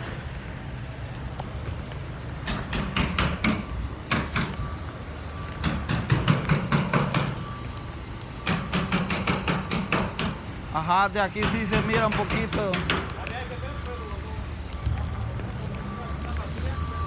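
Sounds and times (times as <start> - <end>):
hammers driving nails into wood: 2.4 - 4.6, 5.6 - 7.4, 8.4 - 10.5, 11.4 - 13.2.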